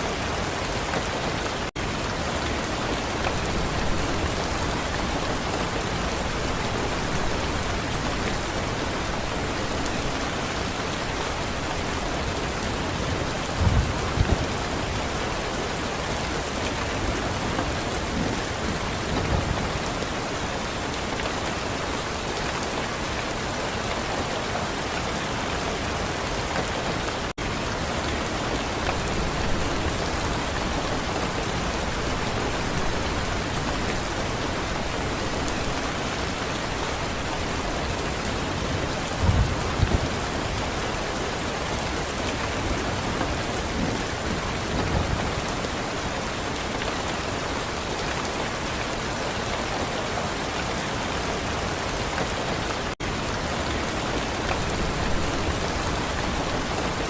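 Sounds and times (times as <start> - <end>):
steady rain pouring: 0.0 - 57.0
distant thunder rumbles: 12.6 - 15.1, 28.5 - 40.8.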